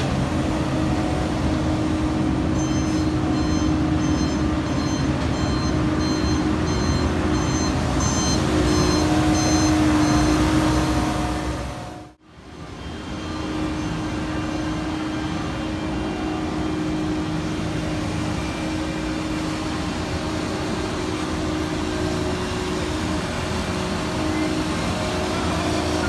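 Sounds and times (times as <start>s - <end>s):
diesel engine running: 0.0s - 12.2s, 12.8s - 26.0s
backup alarm beeping: 0.2s - 11.4s.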